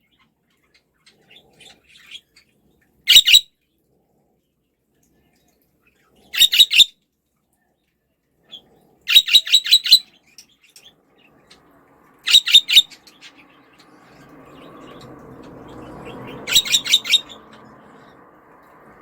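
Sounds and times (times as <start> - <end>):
budgerigar chirping: 3.1 - 3.5, 6.4 - 6.9, 9.1 - 10.2, 12.3 - 13.4, 16.1 - 17.7.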